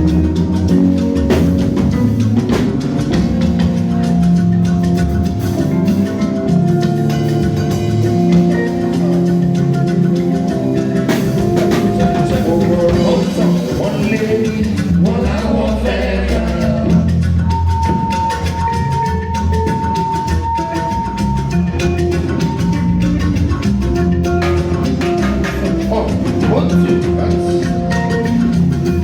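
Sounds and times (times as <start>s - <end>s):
drum hits: 0.0s - 15.4s, 22.2s - 29.0s
live band playing instrumental: 0.0s - 29.0s.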